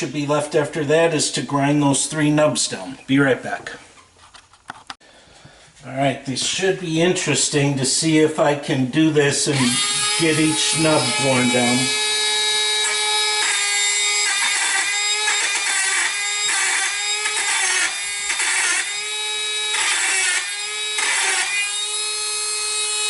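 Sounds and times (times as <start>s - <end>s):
bit grinding on metal: 9.5s - 22.7s
power grinding tool whining: 9.5s - 23.0s.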